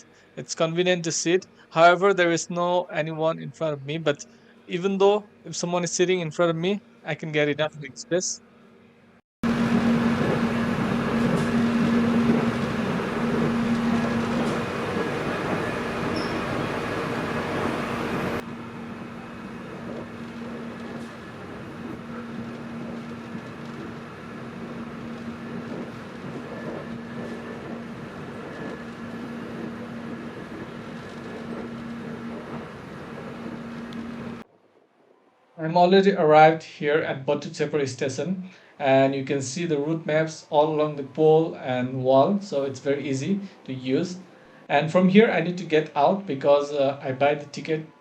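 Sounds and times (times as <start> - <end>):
steady hum: 0.0 - 36.0
train running rumble: 9.4 - 34.4.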